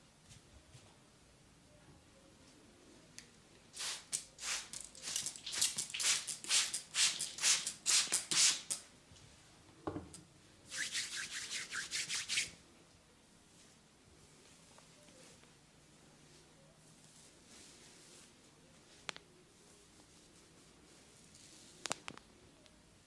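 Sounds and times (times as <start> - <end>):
hands rubbing briskly: 10.7 - 12.5.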